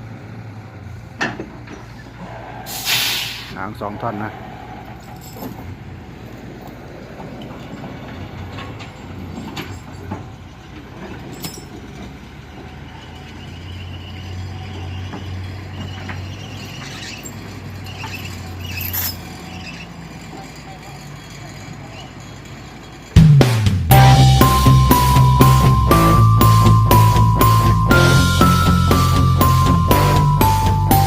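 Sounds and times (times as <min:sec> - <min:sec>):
truck engine running: 0:07.9 - 0:31.0.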